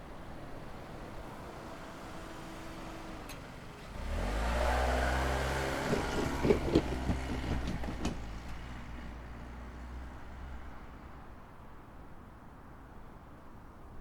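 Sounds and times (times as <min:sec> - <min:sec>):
vehicle engine accelerating: 0:01.7 - 0:10.5
tyres knocking over rails: 0:05.3 - 0:09.1.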